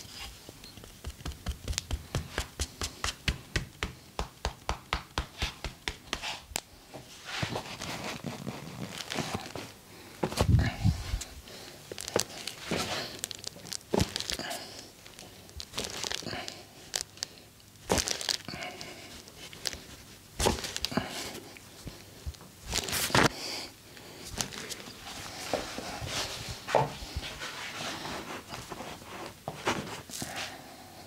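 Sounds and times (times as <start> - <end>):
hands rubbing and rustling: 0.0 - 23.3, 24.1 - 30.6
hands tapping and slapping: 0.7 - 6.7.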